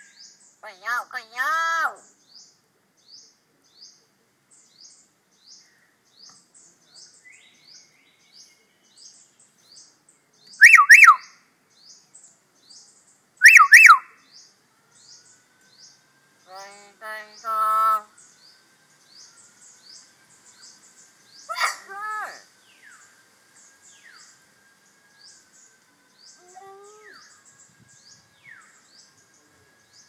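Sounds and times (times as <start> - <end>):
bird mimicking voice: 0.6 - 2.1, 10.6 - 11.3, 13.4 - 14.0, 16.5 - 18.1, 21.5 - 22.4, 26.4 - 27.3
faint high chirps: 10.4 - 11.4, 12.9 - 16.8
bird double whistles: 10.6 - 11.3, 13.4 - 14.1.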